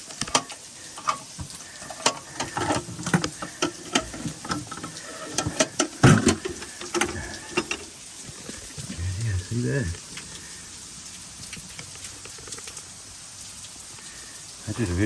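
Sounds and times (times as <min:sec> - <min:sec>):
clicks and knocks of box handling: 0:00.0 - 0:07.9
rustling: 0:00.0 - 0:09.2.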